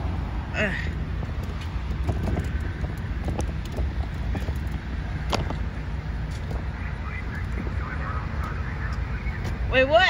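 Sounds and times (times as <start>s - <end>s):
wind buffeting microphone: 0.0s - 10.0s.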